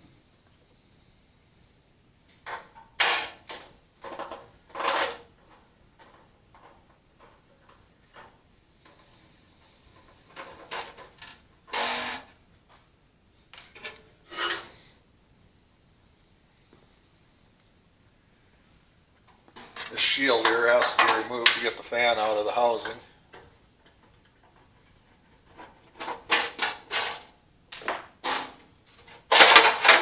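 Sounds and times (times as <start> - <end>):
metal parts scraping and knocking: 2.5 - 8.3, 10.0 - 12.2, 13.6 - 14.7, 19.6 - 23.0, 25.4 - 30.0.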